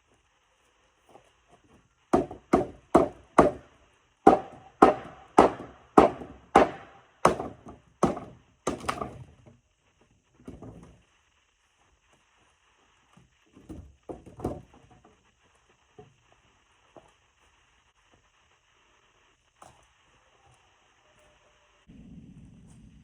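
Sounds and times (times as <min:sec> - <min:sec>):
hammer striking wood: 0:02.1 - 0:09.2.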